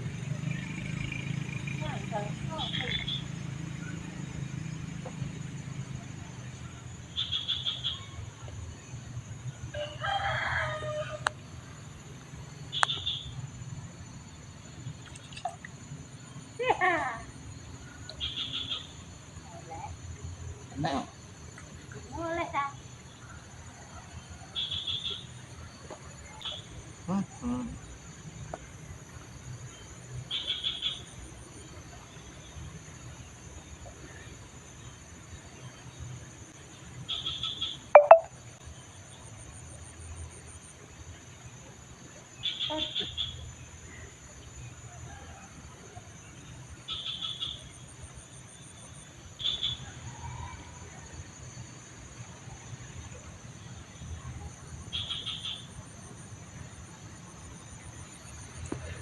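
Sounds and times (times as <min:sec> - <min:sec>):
insects singing: 0:00.4 - 0:08.3, 0:10.6 - 0:23.2, 0:36.8 - 0:39.2, 0:42.2 - 0:44.6, 0:46.2 - 0:50.0, 0:52.8 - 0:59.0
rapid high chirps: 0:38.0 - 0:38.3.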